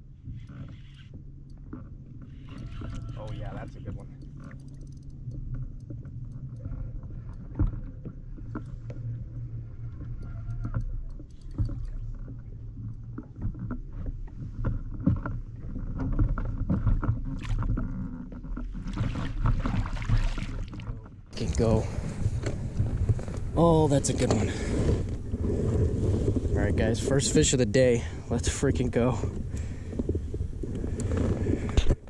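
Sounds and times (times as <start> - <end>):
low steady rumble: 0.0 - 32.0
fish splashing in water: 18.7 - 20.9.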